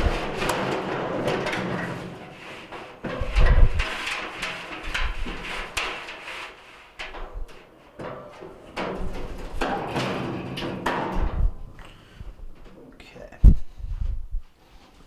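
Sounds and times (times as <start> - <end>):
metal drum clunks and knocks: 0.0 - 6.0, 7.1 - 11.8
metal scraping: 0.0 - 11.8.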